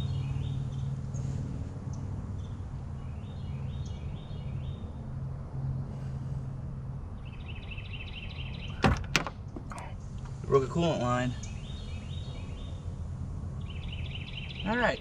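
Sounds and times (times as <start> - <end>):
songbird chirping: 0.0 - 5.0, 7.0 - 15.0
low mechanical hum: 0.0 - 15.0.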